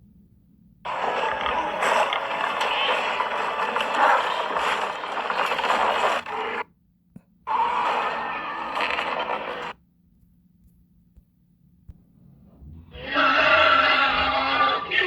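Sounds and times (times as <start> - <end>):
wild boar rasping call: 12.9 - 15.0.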